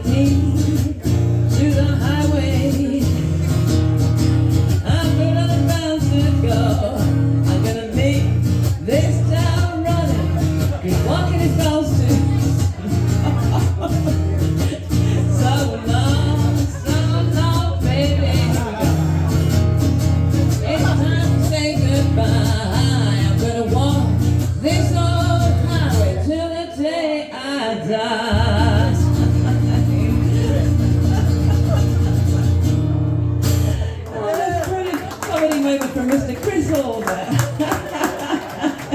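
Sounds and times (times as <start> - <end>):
person singing: 0.0 - 3.8, 4.6 - 19.4, 20.3 - 31.3
bass line: 0.0 - 26.2, 28.3 - 33.8
guitar over steady beat: 0.0 - 26.4, 28.3 - 34.1.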